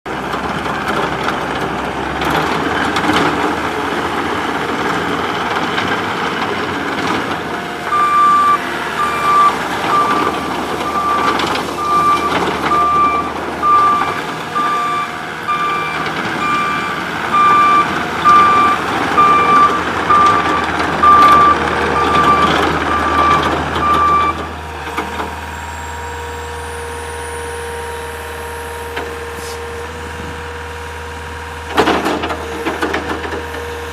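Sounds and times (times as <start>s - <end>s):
track loader engine and hydraulics: 0.1s - 33.9s
reverse alarm beeping: 7.9s - 24.4s.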